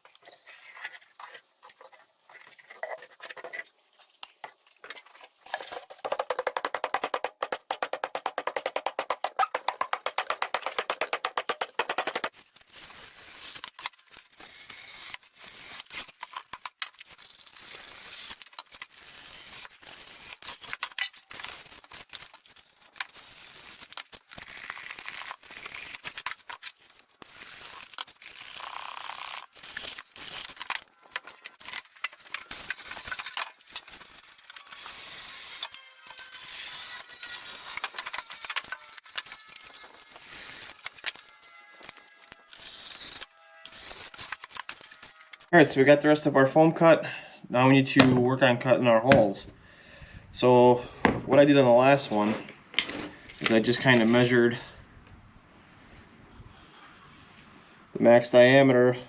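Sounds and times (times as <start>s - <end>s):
foam board scraping and crackling: 0.0s - 45.6s.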